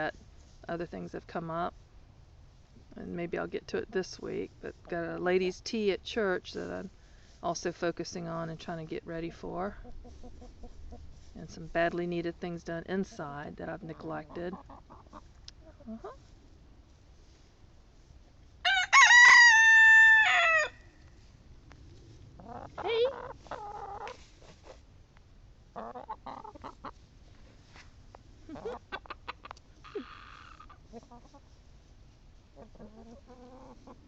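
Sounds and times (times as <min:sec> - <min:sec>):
hens clucking: 0:09.2 - 0:11.6, 0:12.9 - 0:16.2, 0:22.4 - 0:24.8, 0:25.7 - 0:27.0, 0:28.4 - 0:31.6, 0:32.5 - 0:34.0
rooster crowing: 0:18.7 - 0:20.8.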